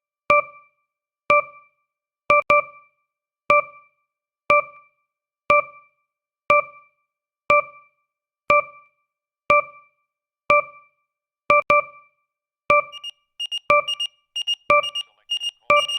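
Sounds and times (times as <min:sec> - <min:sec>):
timer ticking: 0:12.7 - 0:15.9
fast high-pitched beeping alarm: 0:12.9 - 0:15.9.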